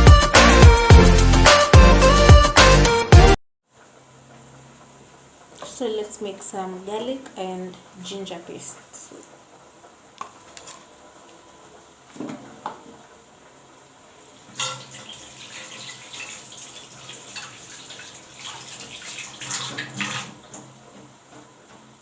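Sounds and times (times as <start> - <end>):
kitchen tap running water: 14.3 - 20.8.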